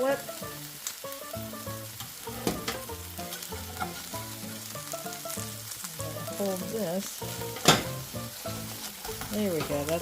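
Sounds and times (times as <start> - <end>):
patties sizzling in a pan: 0.0 - 10.0
utensil knocking against pan: 7.6 - 8.0.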